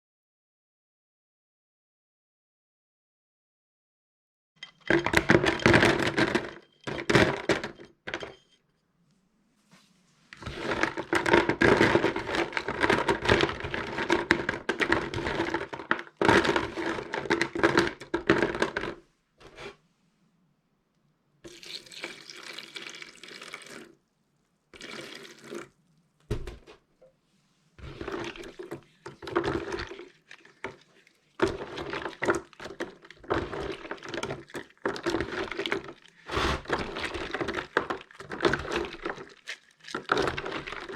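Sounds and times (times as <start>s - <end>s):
soap splashing and rubbing in water: 21.5s - 40.9s.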